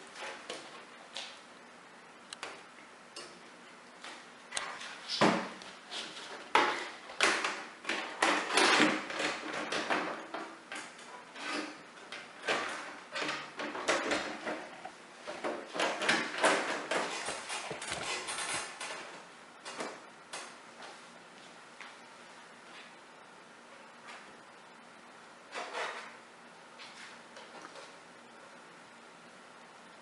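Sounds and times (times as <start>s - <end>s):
sheet metal clacks and scrapes: 5.9s - 19.1s, 25.5s - 26.2s.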